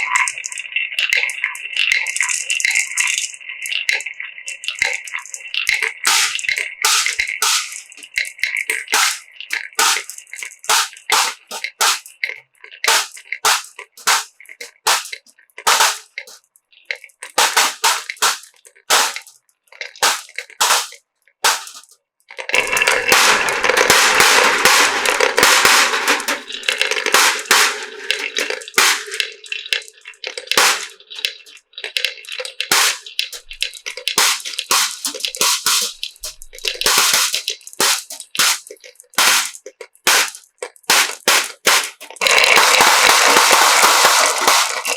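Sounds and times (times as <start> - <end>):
marbles clattering on wooden run: 5.7 - 12.2, 17.0 - 44.9.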